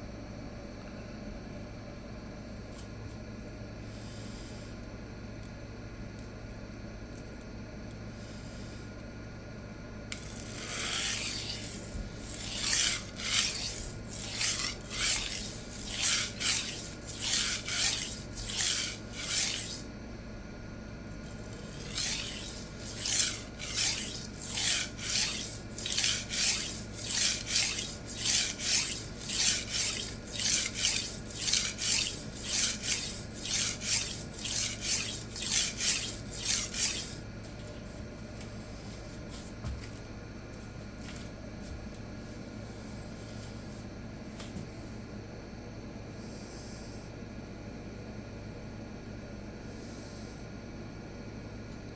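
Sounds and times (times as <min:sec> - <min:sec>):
knife scraping on sharpening stone: 0:10.2 - 0:19.9, 0:21.2 - 0:37.2.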